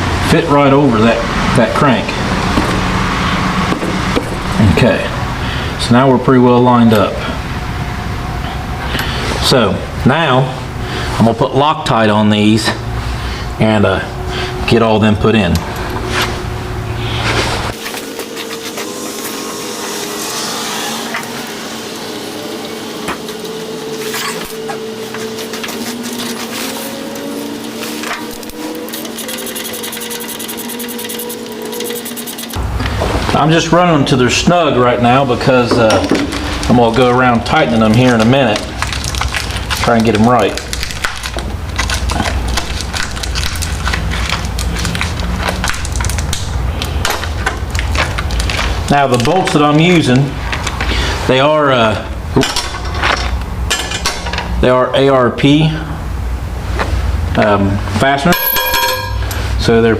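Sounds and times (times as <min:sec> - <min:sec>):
steady hum: 0:00.0 - 0:59.9
hand ratchet clicking: 0:28.9 - 0:32.6.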